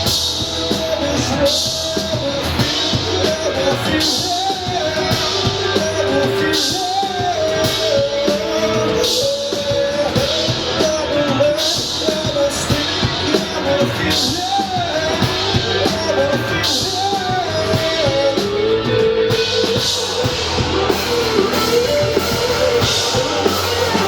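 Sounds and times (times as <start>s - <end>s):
live rock band playing: 0.0s - 24.0s
person singing: 0.0s - 24.0s.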